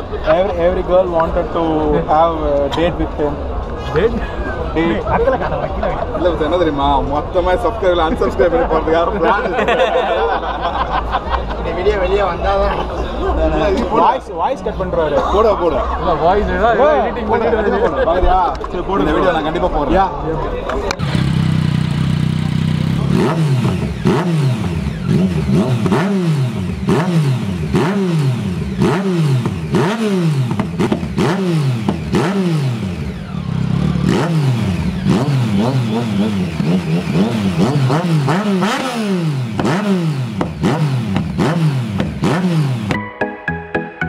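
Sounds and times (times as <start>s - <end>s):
motorcycle engine revving: 21.0s - 43.0s.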